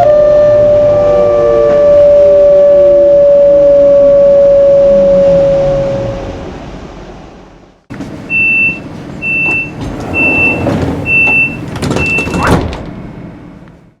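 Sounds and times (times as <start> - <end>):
train rumble: 0.0 - 14.0
high-pitched door warning beeps: 8.3 - 12.6.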